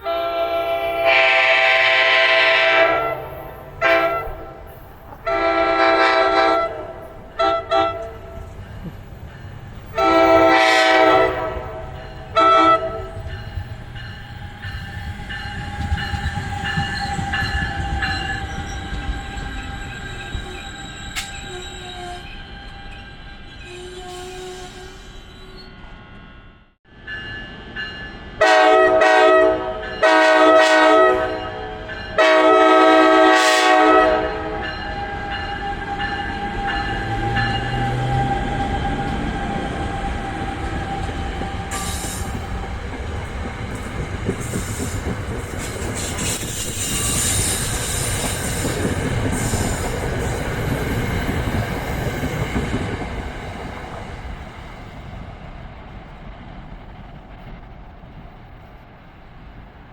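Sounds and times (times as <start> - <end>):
train horn blasts: 0.0 - 8.6, 9.9 - 13.4, 21.2 - 22.5, 23.6 - 25.2, 28.4 - 38.6
train passing on rails: 0.0 - 59.9
wheels clacking over rail joints: 35.0 - 54.8.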